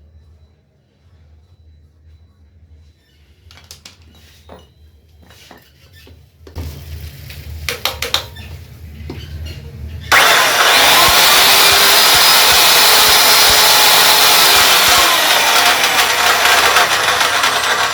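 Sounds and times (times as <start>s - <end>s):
cut-off saw motor running: 10.1s - 17.9s.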